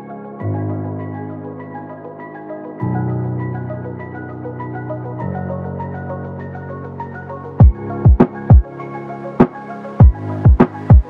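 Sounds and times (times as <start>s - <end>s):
soft ambient synth music: 0.0s - 11.0s.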